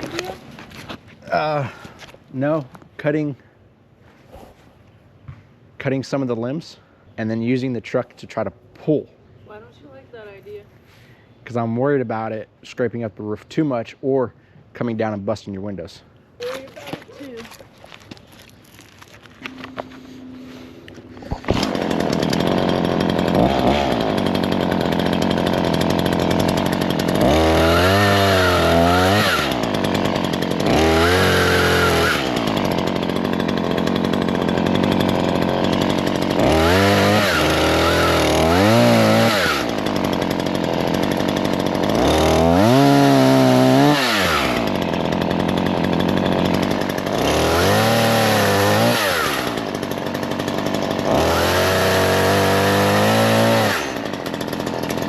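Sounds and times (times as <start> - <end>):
chainsaw revving: 0.0 - 0.5, 18.8 - 55.0.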